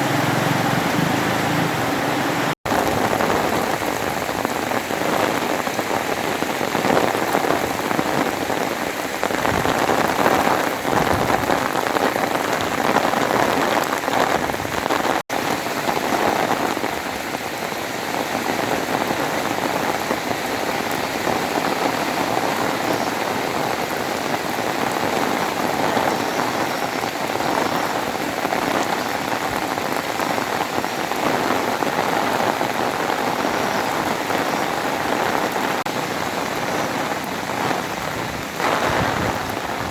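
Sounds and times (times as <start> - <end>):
heavy rain pouring: 0.0 - 39.9.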